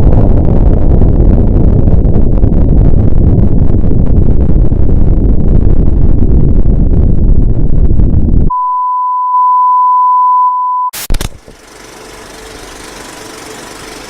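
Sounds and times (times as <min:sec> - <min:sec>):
loud low rumbling: 0:00.0 - 0:08.5.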